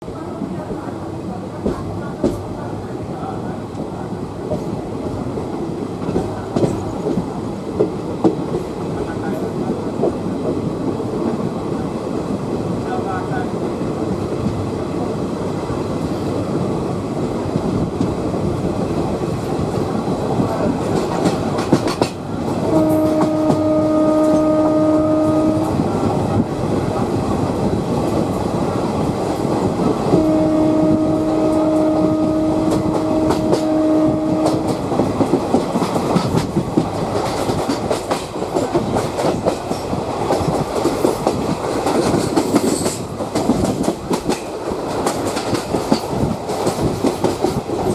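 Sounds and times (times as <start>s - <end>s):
train wheels clattering over rail joints: 20.5s - 24.5s, 34.4s - 47.9s
train horn blasts: 22.6s - 25.8s, 30.1s - 34.8s.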